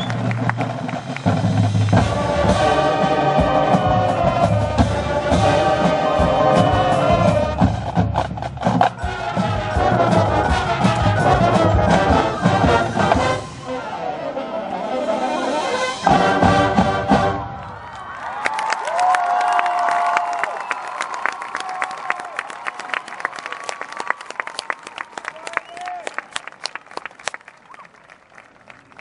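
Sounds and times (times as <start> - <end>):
bass drums and drumline: 0.0 - 13.8, 16.0 - 18.0
marching band playing: 0.0 - 17.9
brass sustained chords: 1.9 - 8.0, 9.0 - 17.7.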